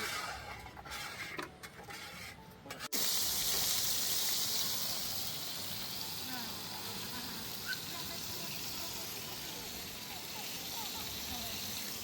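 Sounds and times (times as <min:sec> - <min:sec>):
patties sizzling in a pan: 0:02.9 - 0:12.0.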